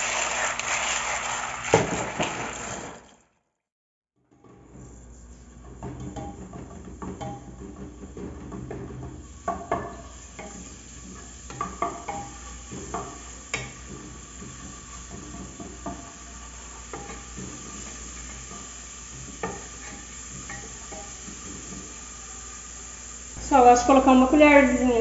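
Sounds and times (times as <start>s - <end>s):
spoon scraping a pot: 4.3s - 22.2s
garlic sizzling in oil: 4.4s - 25.0s.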